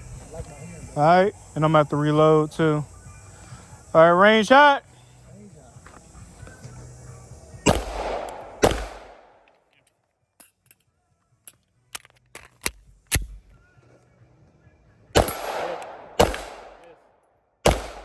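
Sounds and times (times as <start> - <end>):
loud pistol shots with echo: 7.6 - 9.4, 15.2 - 17.0, 17.6 - 18.0.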